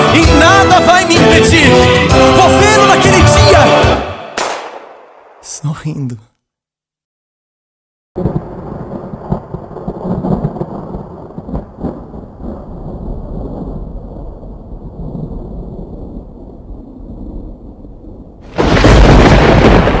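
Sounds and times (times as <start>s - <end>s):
thunder cracks: 8.2s - 20.0s
thunder rumbling: 8.2s - 20.0s.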